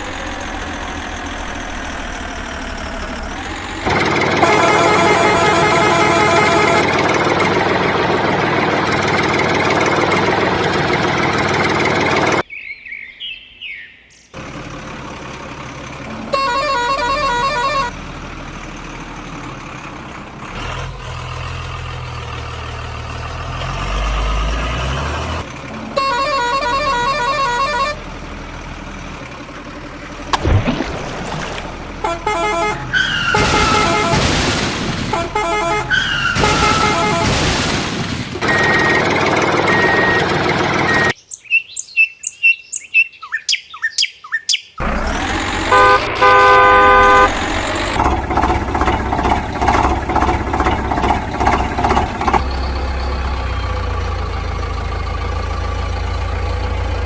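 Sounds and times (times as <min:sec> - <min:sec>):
low rumble: 0:00.0 - 0:03.9
cartoon engine running: 0:00.0 - 0:12.4, 0:16.1 - 0:17.9, 0:26.0 - 0:28.0, 0:32.0 - 0:34.4, 0:35.1 - 0:37.4, 0:38.4 - 0:41.2, 0:44.8 - 0:52.5
horn honks: 0:03.8 - 0:07.1, 0:16.1 - 0:18.0, 0:25.8 - 0:28.1, 0:32.0 - 0:34.4, 0:35.1 - 0:37.5, 0:38.4 - 0:41.2, 0:44.8 - 0:48.0
bang: 0:33.1 - 0:35.3, 0:35.9 - 0:38.6.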